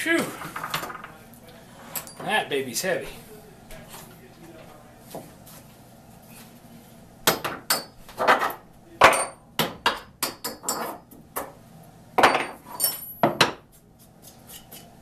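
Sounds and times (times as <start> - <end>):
metal tools clanking: 1.9 - 2.4, 12.2 - 13.4.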